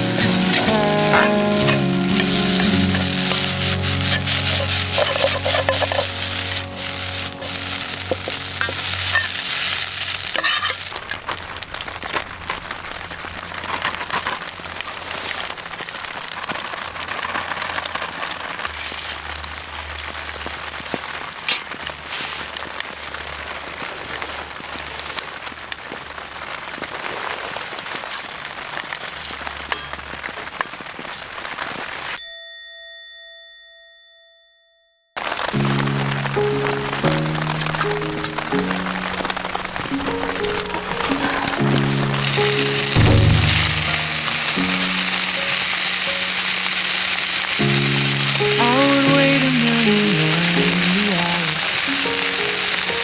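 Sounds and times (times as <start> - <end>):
soft background music: 0.0 - 10.4, 35.6 - 53.0
food sizzling in a wok: 0.0 - 32.3, 35.2 - 53.0.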